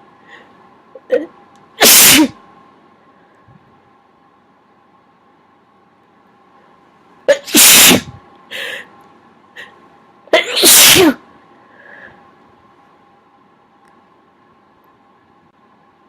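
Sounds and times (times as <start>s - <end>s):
person sneezing loudly: 1.1s - 2.3s, 7.3s - 8.2s, 10.3s - 11.2s.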